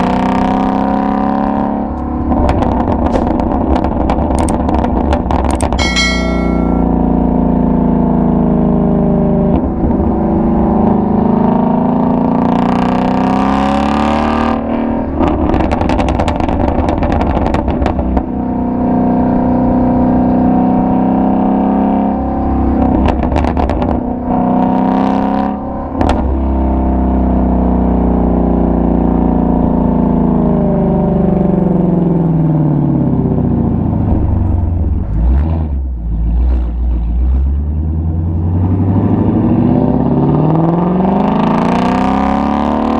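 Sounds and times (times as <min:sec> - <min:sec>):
exhaust pops and crackles: 0:02.0 - 0:05.8, 0:15.3 - 0:18.3.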